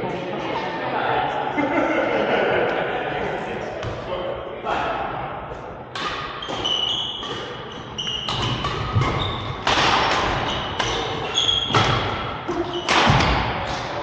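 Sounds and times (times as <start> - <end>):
racket hitting shuttlecock: 5.9 - 14.0
shoe squeaks on court floor: 6.4 - 9.6, 10.3 - 12.0.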